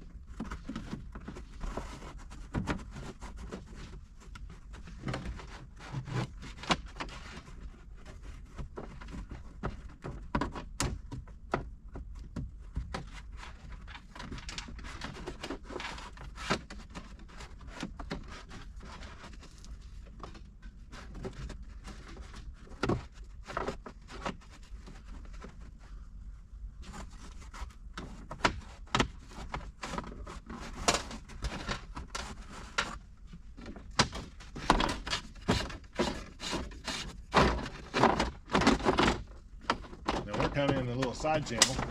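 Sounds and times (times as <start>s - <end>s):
wire scraping against plastic trim: 26.8s - 41.9s.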